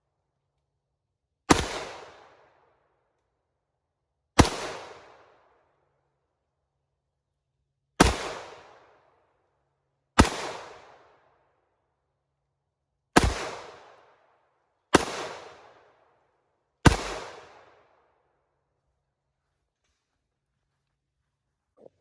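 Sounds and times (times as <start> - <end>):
gunshots with echo: 1.5 - 2.3, 8.0 - 8.6, 10.2 - 10.9, 13.2 - 13.9, 14.9 - 15.8, 16.8 - 17.7.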